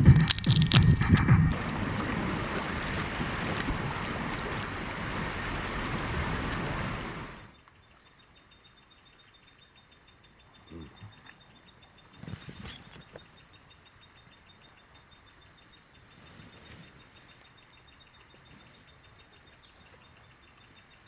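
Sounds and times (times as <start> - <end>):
steady rushing noise: 0.0 - 7.5.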